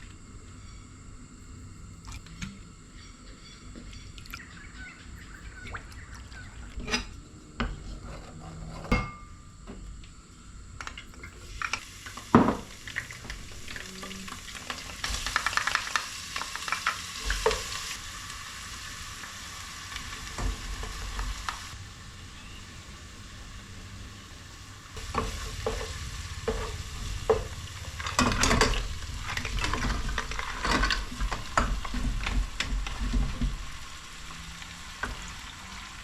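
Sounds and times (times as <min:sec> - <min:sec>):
crab sizzling in a pan: 0:10.2 - 0:36.0.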